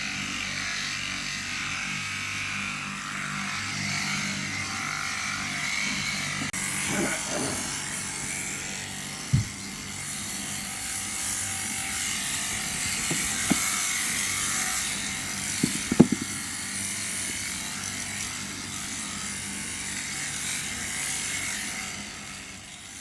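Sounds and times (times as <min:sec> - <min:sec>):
sharp knocks: 0:12.6 - 0:13.8, 0:15.6 - 0:16.4.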